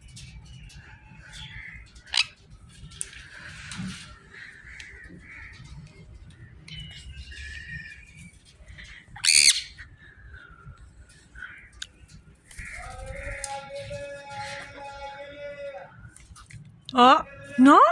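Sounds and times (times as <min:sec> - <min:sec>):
birds chirping and whistling: 0:00.0 - 0:15.0
bird harsh squawk: 0:09.2 - 0:09.9.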